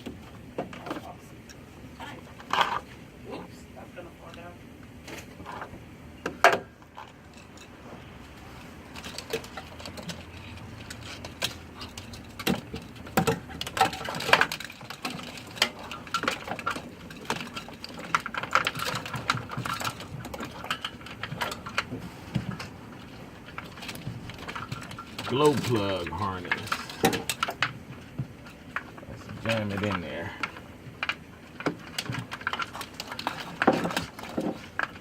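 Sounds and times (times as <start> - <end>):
tools and parts clicking and knocking: 8.8 - 35.0.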